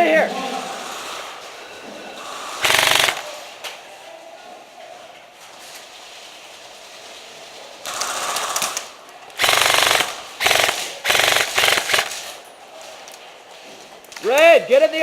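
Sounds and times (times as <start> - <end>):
airsoft rifle automatic bursts: 2.6 - 3.3, 7.9 - 12.4.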